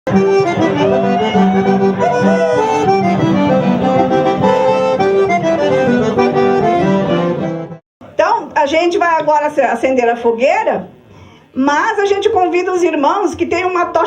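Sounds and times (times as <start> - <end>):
accordion music: 0.1 - 7.8.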